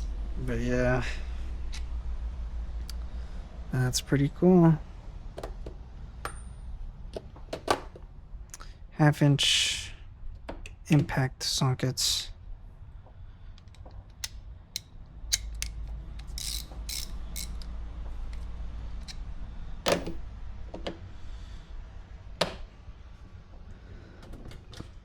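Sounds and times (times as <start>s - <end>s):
steady low hum: 0.0s - 25.0s
metal tools clicking and clinking: 13.6s - 17.7s.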